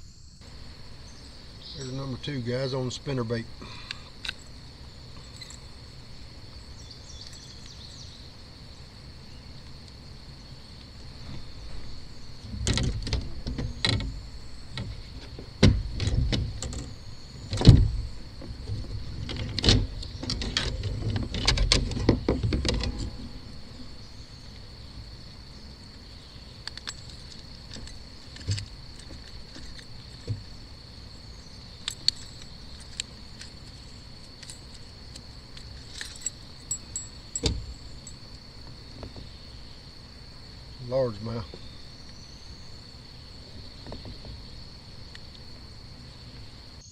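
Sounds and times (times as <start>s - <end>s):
insects droning: 0.0s - 46.9s
fishing tackle knocks and rattles: 12.5s - 23.3s, 34.4s - 38.2s.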